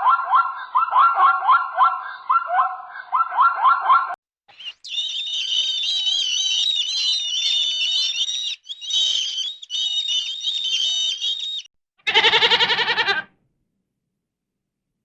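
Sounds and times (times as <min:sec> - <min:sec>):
many birds chirping: 0:04.5 - 0:12.8
fast repeated animal calls: 0:04.6 - 0:13.3.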